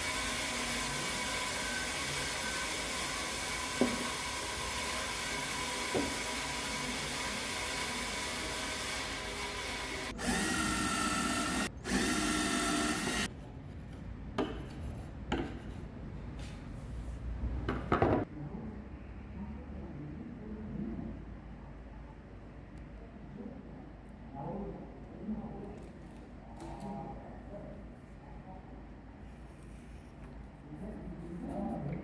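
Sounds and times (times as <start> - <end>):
electric drill running: 0.0 - 13.3.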